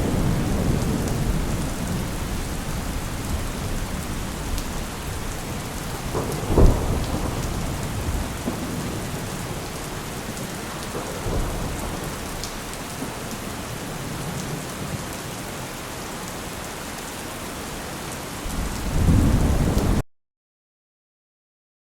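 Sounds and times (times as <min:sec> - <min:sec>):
thunder rumbling: 0:00.0 - 0:15.0, 0:18.4 - 0:20.0
heavy rain falling: 0:00.0 - 0:20.0.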